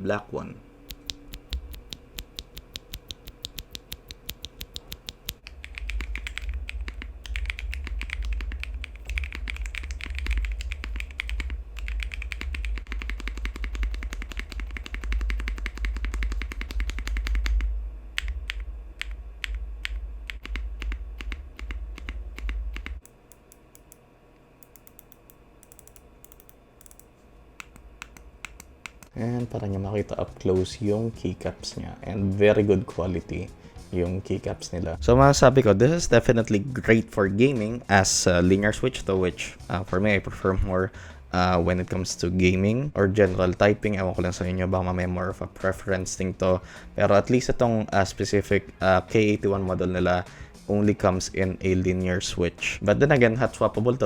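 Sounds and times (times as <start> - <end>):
mechanical keyboard typing: 0.9 - 23.9, 24.6 - 27.1.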